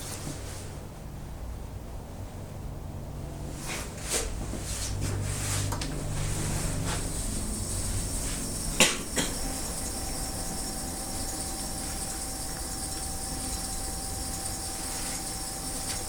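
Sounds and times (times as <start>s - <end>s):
low hum: 5.9s - 16.0s
steady tone: 6.3s - 16.0s
sharp knocks and clicks: 8.8s - 9.6s.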